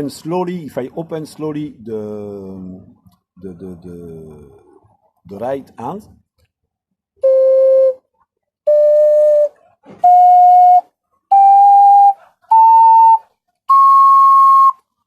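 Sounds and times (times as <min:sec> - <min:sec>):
ocarina playing a scale: 0:07.2 - 0:08.0, 0:08.7 - 0:14.8.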